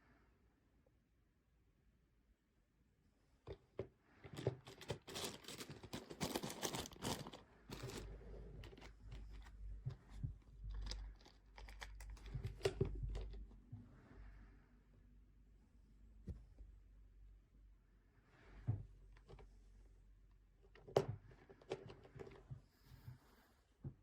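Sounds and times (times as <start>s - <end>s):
clicks and knocks of handling: 3.4s - 13.6s
packaging rustling and crinkling: 4.4s - 9.5s.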